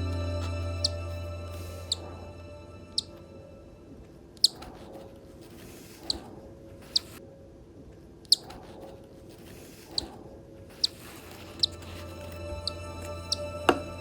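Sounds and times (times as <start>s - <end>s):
bird chick peeping: 6.0s - 7.2s, 9.9s - 13.8s.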